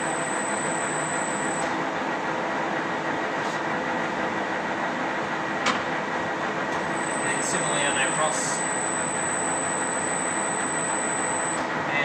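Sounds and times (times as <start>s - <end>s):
thin high whine: 0.0s - 1.8s, 6.9s - 11.7s
lathe gearing whirring: 0.0s - 11.9s.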